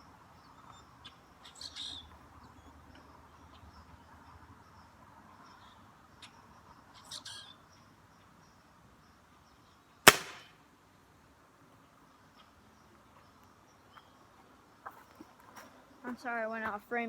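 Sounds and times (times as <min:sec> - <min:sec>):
pellet gun shot: 0:10.1 - 0:10.5.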